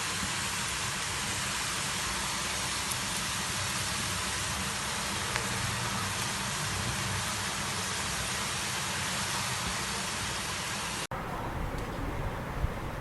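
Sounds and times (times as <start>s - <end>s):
dough sizzling in hot oil: 0.0s - 11.1s.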